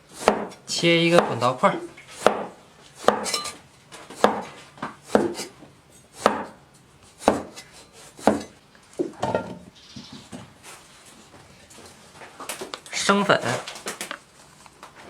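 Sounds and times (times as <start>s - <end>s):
knife striking cutting board: 0.2s - 1.4s, 2.2s - 3.6s, 4.2s - 4.5s, 5.1s - 5.5s, 6.2s - 6.6s, 7.2s - 7.6s, 8.2s - 8.5s.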